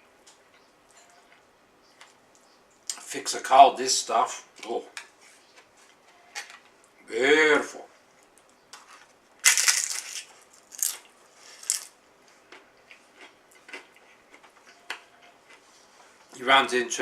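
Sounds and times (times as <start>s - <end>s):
crunching of crisp food: 8.2s - 15.9s
faint chewing clicks: 12.3s - 15.6s.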